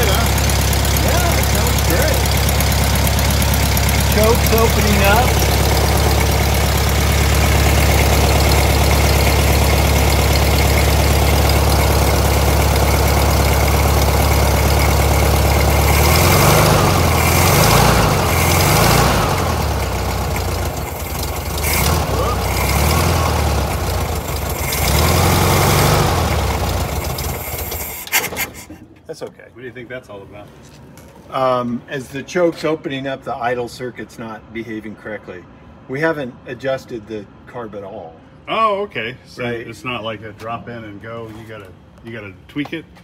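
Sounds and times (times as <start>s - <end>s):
car engine idling unevenly: 0.0s - 28.9s.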